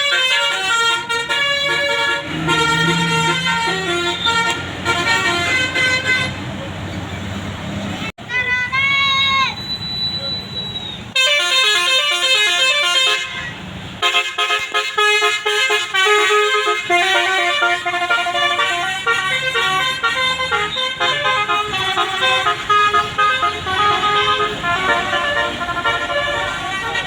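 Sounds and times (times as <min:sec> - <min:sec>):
musical air horn melody: 0:00.0 - 0:06.4, 0:11.2 - 0:27.0.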